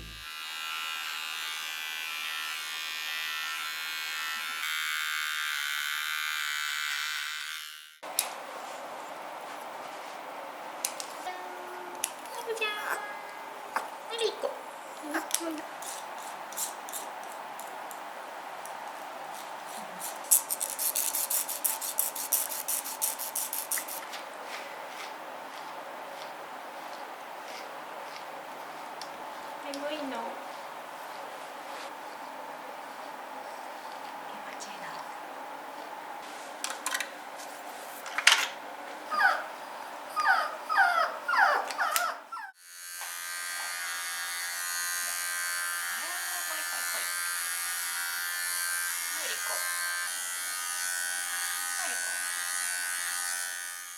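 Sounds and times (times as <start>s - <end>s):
electric grooming tool buzzing: 0.0s - 8.0s, 20.3s - 24.0s, 42.6s - 53.9s
puppy whimpering: 39.1s - 39.5s, 40.1s - 42.6s.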